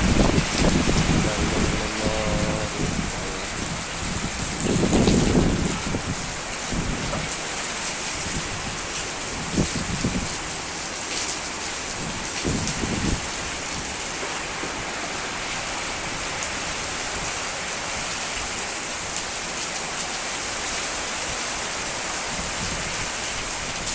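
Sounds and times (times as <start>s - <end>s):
wind gusts buffeting microphone: 0.0s - 10.6s, 11.9s - 18.2s
heavy rain in strong wind: 0.0s - 23.9s.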